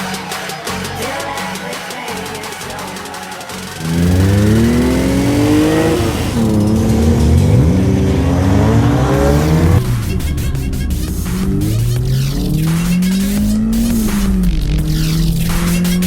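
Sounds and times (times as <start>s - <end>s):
car engine accelerating hard: 3.8s - 16.0s.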